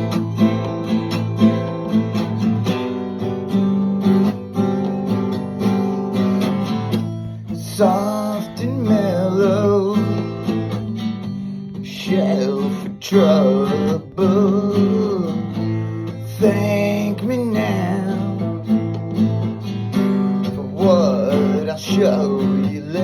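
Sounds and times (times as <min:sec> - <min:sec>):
acoustic guitar strumming chords: 0:00.0 - 0:23.0.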